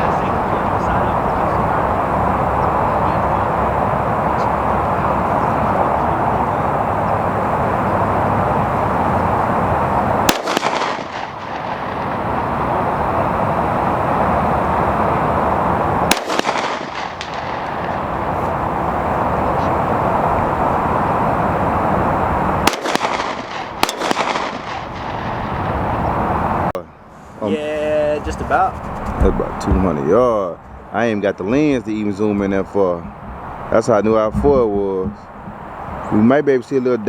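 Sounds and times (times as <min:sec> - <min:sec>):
steady rushing noise: 0:00.0 - 0:36.3
suppressed rifle shots: 0:10.3 - 0:12.7, 0:16.1 - 0:18.3, 0:22.6 - 0:25.8.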